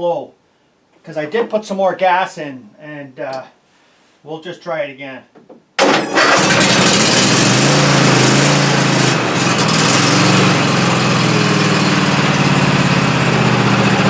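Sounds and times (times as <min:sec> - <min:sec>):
lawn tractor engine running: 0:05.8 - 0:14.0.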